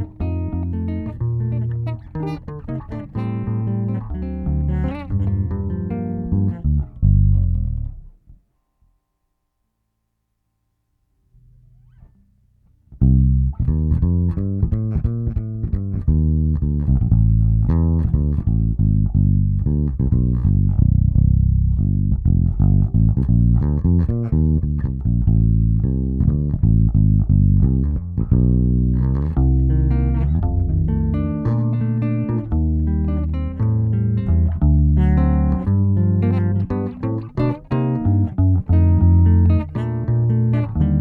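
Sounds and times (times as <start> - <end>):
electric bass guitar: 0.0 - 8.4, 11.4 - 41.0.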